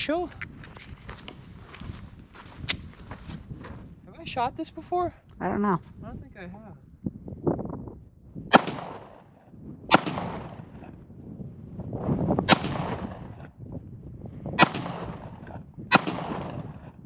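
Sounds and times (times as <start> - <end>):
pistol shots echoing: 8.5 - 10.9, 12.4 - 13.4, 14.6 - 17.0.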